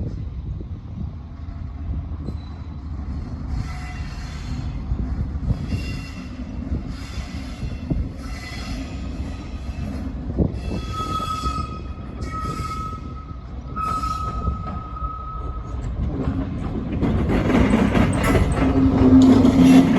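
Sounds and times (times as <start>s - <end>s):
train rumbling on rails: 0.0s - 19.9s
wheel squeal: 10.6s - 15.8s.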